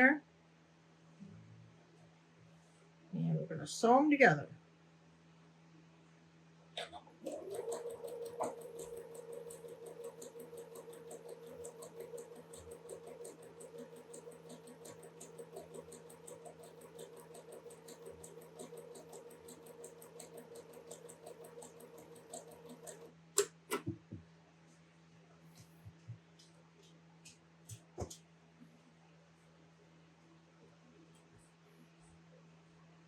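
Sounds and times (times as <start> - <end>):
sewing machine stitching: 6.8 - 23.9.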